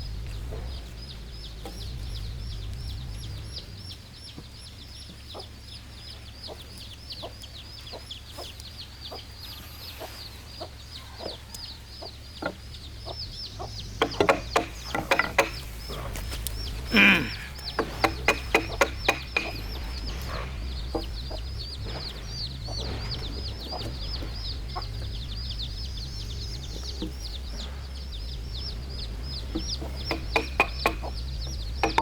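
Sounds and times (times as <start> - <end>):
chickens clucking: 0.0 - 32.0
fast high-pitched chirping: 0.0 - 32.0
loud sharp knocks: 12.4 - 32.0.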